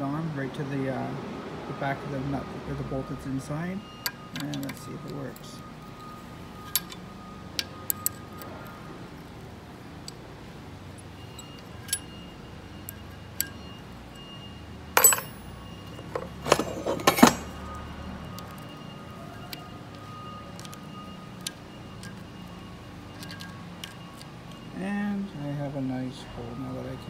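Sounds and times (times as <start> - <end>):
metallic clatter: 15.0 - 17.6.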